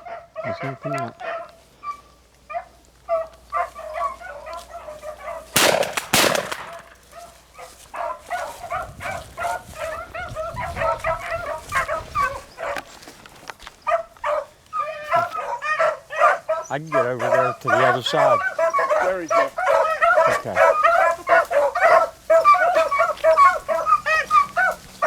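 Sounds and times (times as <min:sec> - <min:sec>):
beagles baying: 0:00.0 - 0:25.0
loud bangs: 0:05.6 - 0:07.0.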